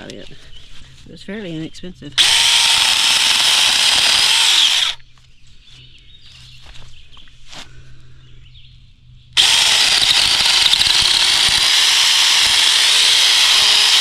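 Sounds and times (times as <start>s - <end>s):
electric chainsaw running: 2.2s - 5.0s, 9.4s - 14.0s.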